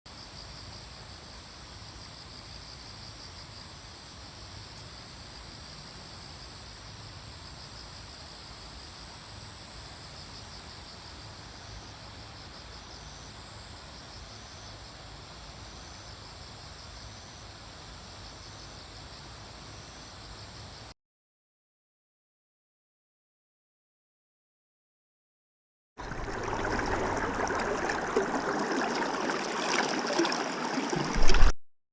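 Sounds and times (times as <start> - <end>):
low even rumble: 26.0 - 28.4.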